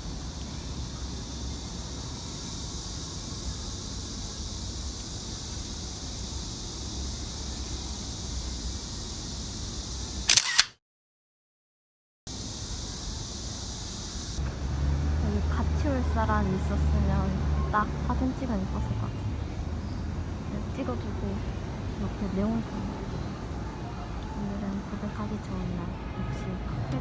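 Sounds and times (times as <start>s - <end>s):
high hiss: 0.0s - 10.3s, 12.3s - 27.0s
camera shutter clicking: 10.3s - 10.8s.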